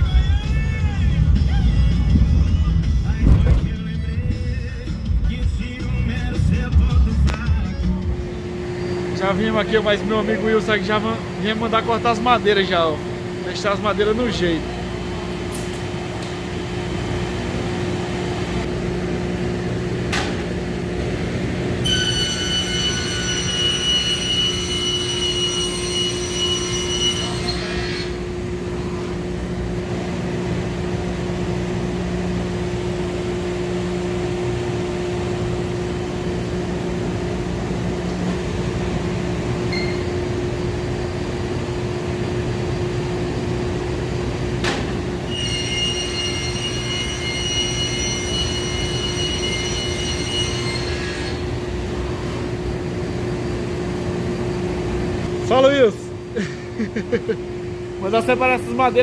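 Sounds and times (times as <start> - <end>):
high-pitched whine: 0.0 - 15.7, 21.8 - 29.4, 39.6 - 41.1, 45.2 - 56.2
saw machinery humming: 7.8 - 20.0.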